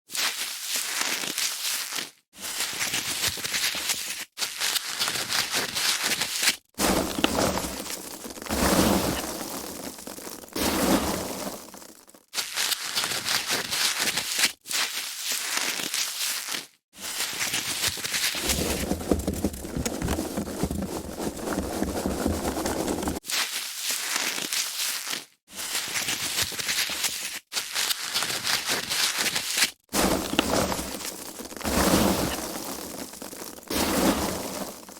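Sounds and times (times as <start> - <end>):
foam packaging crackling: 17.5 - 25.2, 26.0 - 34.9.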